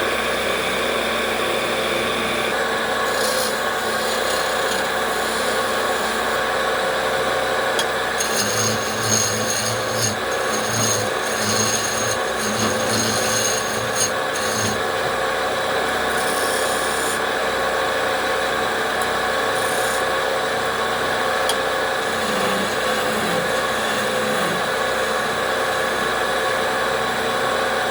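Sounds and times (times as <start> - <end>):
wood lathe running: 2.4 - 17.8, 18.6 - 27.9
turning tool scraping wood: 3.0 - 6.3, 7.8 - 15.3, 21.7 - 26.3.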